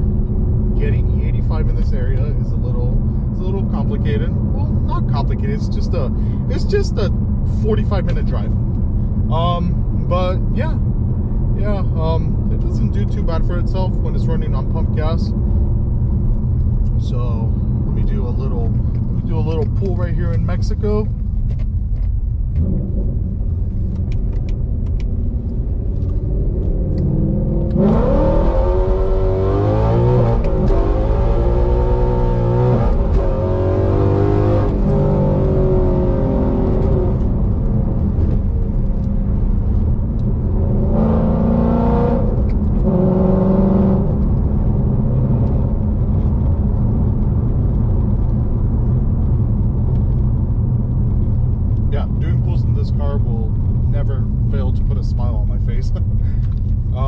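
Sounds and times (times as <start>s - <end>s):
car engine revving: 22.0s - 57.0s.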